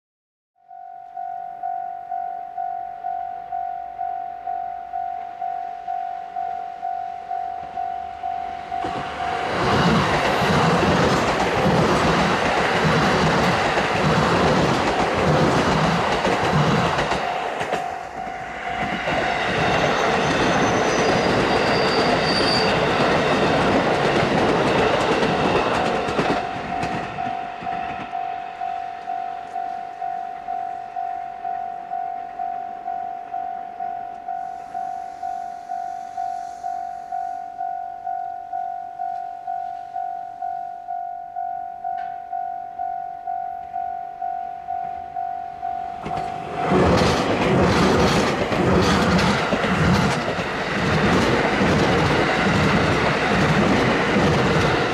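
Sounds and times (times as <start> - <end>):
level crossing alarm dinging: 0.7 - 11.4, 24.7 - 48.1
train wheels clattering over rails: 8.8 - 28.2, 46.0 - 54.9.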